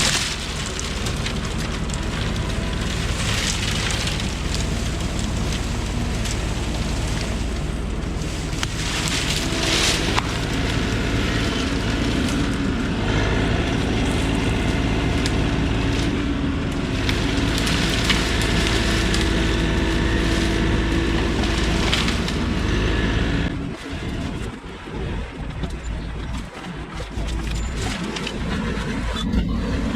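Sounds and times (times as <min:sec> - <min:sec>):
sharp cracks: 0:00.0 - 0:12.8
diesel engine at high revs: 0:00.0 - 0:29.9.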